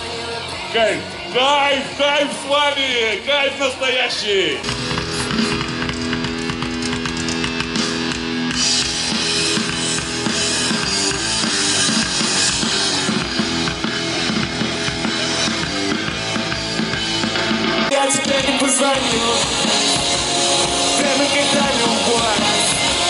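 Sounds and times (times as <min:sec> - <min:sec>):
rock band playing: 0:00.0 - 0:23.0
drums and cymbals: 0:04.6 - 0:23.0.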